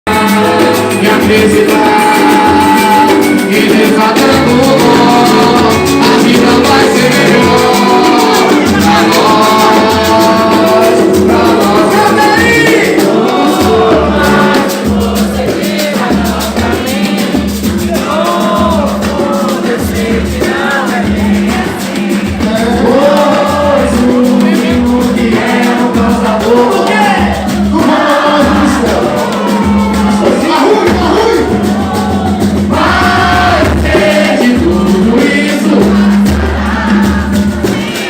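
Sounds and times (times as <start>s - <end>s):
busy percussion: 0.0s - 38.0s
stepping bass line: 0.1s - 16.9s
person singing lead: 0.1s - 38.0s.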